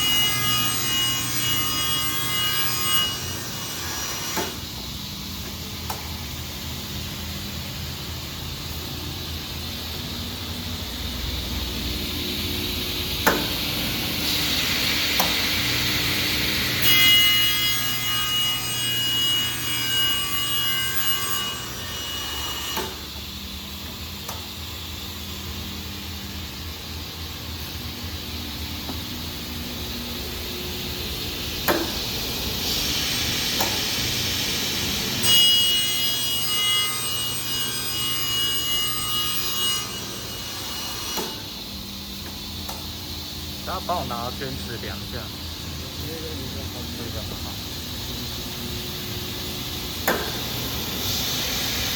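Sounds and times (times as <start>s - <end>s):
high ringing blade whine: 0.0s - 3.9s, 15.6s - 23.2s, 34.9s - 41.7s.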